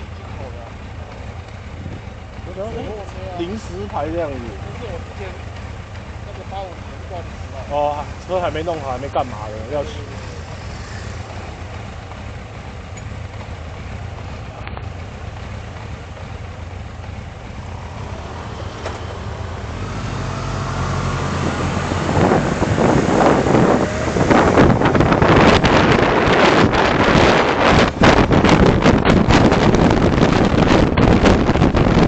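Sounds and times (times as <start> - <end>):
vehicle engine and road noise: 0.0 - 32.0
wind buffeting microphone: 20.9 - 32.0.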